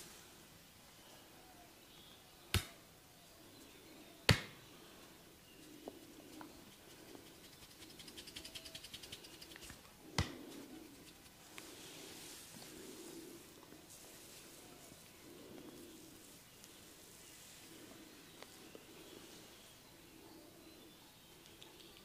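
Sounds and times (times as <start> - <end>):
sharp finger snaps: 2.5 - 2.8, 21.4 - 22.0
fingertip scratching on head: 6.2 - 9.7
soft rubbing: 10.4 - 19.5.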